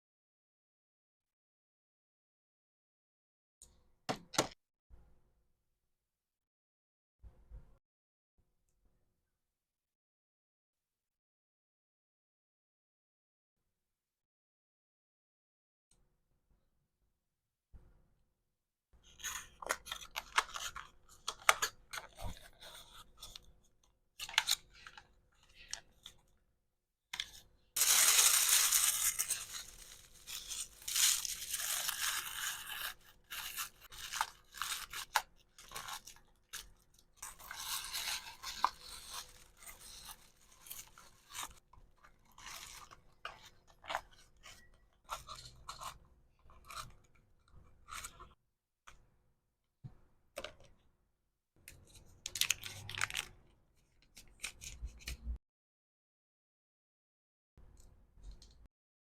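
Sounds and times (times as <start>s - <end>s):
plastic and paper crinkling: 27.2s - 32.8s, 37.2s - 41.6s, 52.3s - 53.4s.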